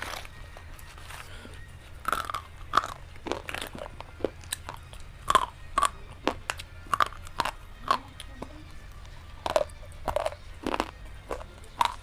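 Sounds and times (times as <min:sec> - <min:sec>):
quiet chewing: 0:01.0 - 0:12.0
crisp crunching bites: 0:02.0 - 0:07.6, 0:09.5 - 0:12.0.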